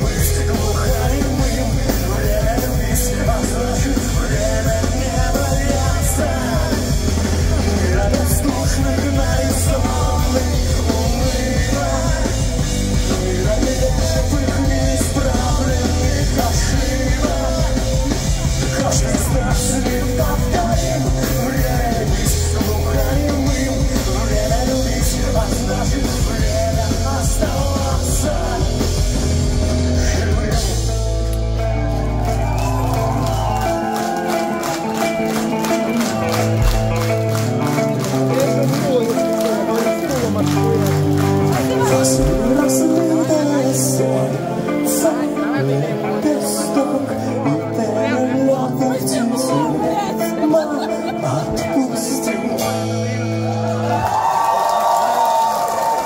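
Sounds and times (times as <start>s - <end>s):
person singing: 0.0s - 31.0s, 32.6s - 54.2s
live punk rock band: 0.0s - 56.0s.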